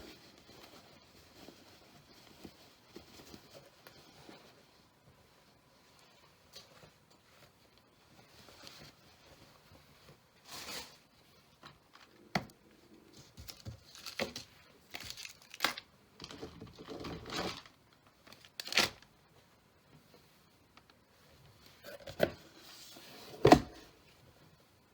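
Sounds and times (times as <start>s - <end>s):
packaging crinkling and tearing: 13.5s - 19.1s.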